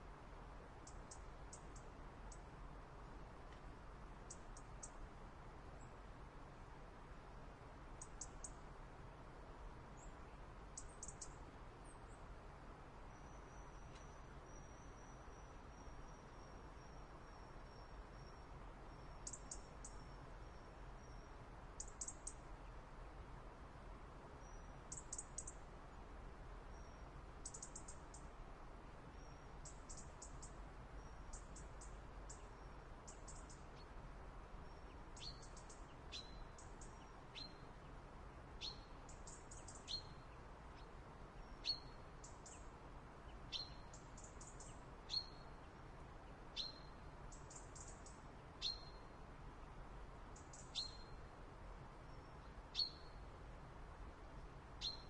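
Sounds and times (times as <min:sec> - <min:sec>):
songbirds chirping: 0:00.0 - 0:55.0.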